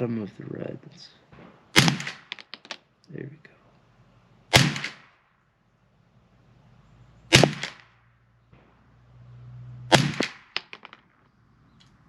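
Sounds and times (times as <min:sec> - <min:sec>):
rifle shots with echo: 0:01.3 - 0:02.8, 0:04.5 - 0:05.2, 0:07.3 - 0:08.7, 0:09.9 - 0:10.8.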